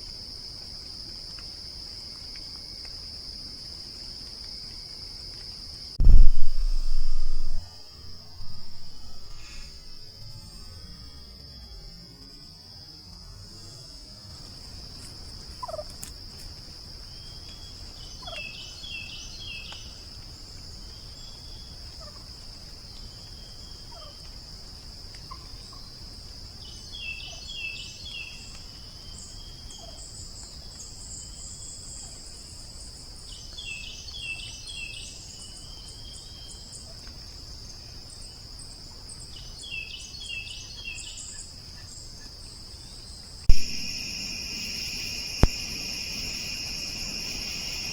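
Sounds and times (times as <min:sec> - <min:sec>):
insects droning: 0:00.0 - 0:47.9
pulsing insect chirp: 0:01.8 - 0:47.9.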